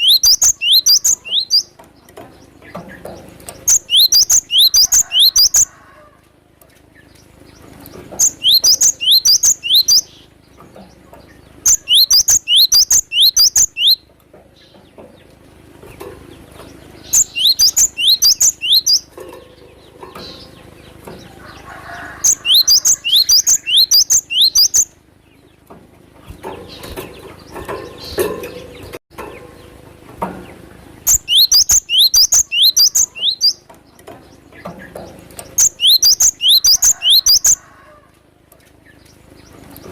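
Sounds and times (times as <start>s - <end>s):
bird singing whistled notes: 0.0s - 1.7s, 3.6s - 5.7s, 8.2s - 10.3s, 11.7s - 14.0s, 17.0s - 19.1s, 22.2s - 25.0s, 31.1s - 33.6s, 35.6s - 37.6s.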